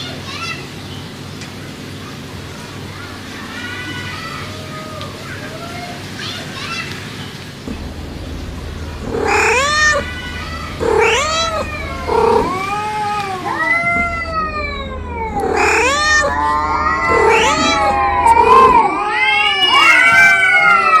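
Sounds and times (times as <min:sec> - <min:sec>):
cats yowling: 0:03.0 - 0:06.2, 0:09.1 - 0:21.0.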